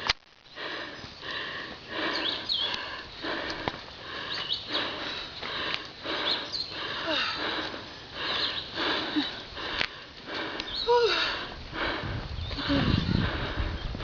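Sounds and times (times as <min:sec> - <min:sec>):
footstep clicks: 0:00.0 - 0:10.8
person breathing hard: 0:00.5 - 0:14.0.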